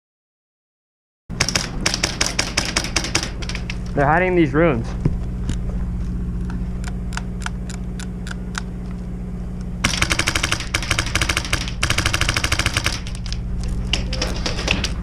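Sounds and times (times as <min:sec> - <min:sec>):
steady low hum: 0:01.3 - 0:15.0
airsoft gun full auto bursts: 0:01.4 - 0:03.6, 0:09.8 - 0:13.4.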